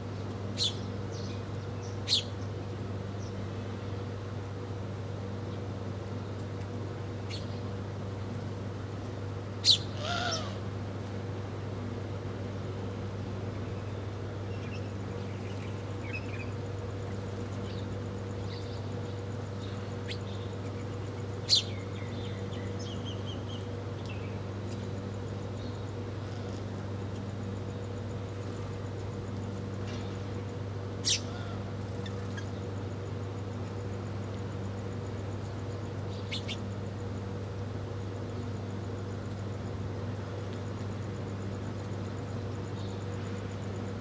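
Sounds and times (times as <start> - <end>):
small birds chirping: 18.4 - 24.4, 36.1 - 36.6.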